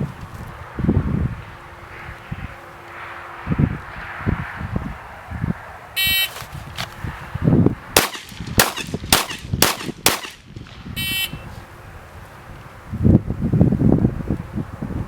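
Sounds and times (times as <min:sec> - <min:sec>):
pistol shots: 0:08.0 - 0:10.5.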